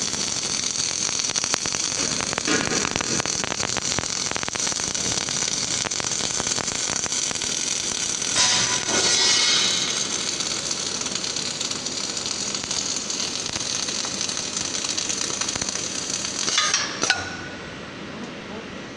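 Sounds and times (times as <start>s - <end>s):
welding arc crackling and hissing: 0.0s - 17.7s.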